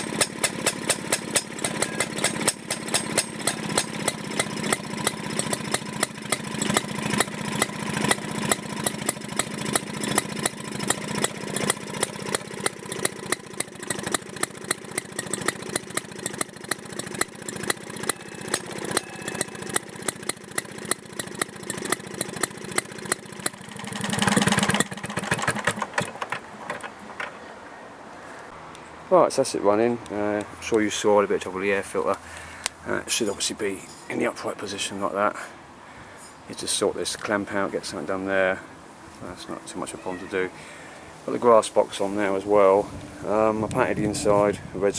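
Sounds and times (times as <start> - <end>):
lawnmower engine running: 0.0 - 27.4.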